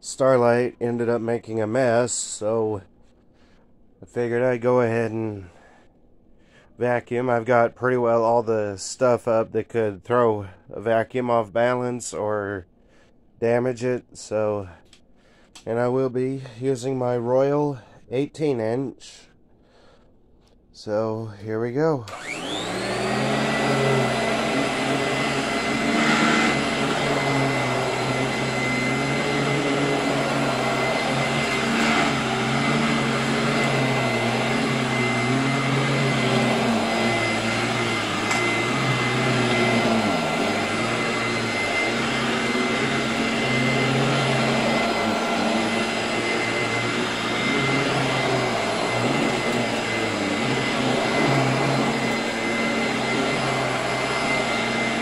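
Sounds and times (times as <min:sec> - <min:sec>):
vacuum cleaner motor whine: 0:22.1 - 0:55.0.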